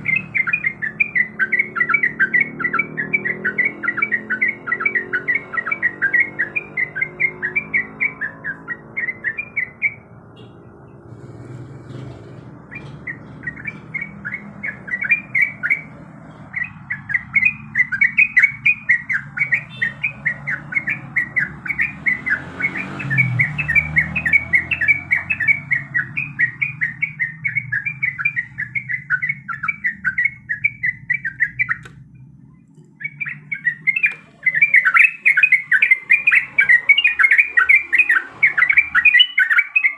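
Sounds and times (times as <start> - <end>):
bulbul rolling chatter: 11.0 - 39.9.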